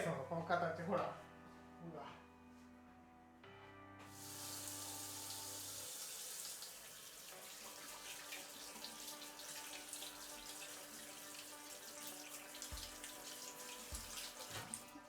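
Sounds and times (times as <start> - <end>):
tap water splashing into sink: 4.2 - 15.0.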